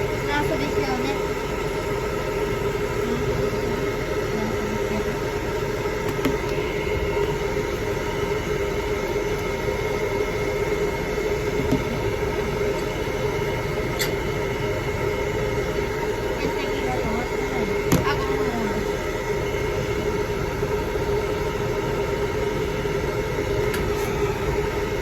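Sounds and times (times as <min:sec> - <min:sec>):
hair dryer running: 0:02.6 - 0:13.4.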